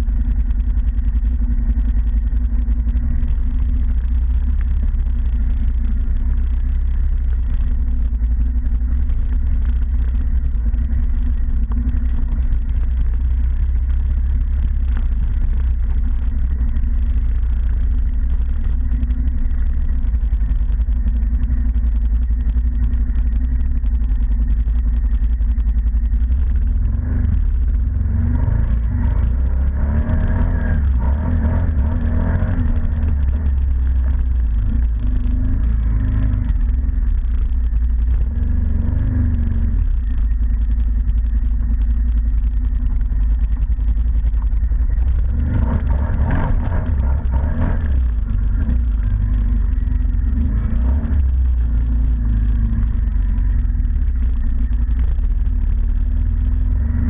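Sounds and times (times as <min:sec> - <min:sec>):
atv engine revving: 0:26.5 - 0:41.9, 0:42.5 - 0:54.8, 0:56.2 - 0:57.0.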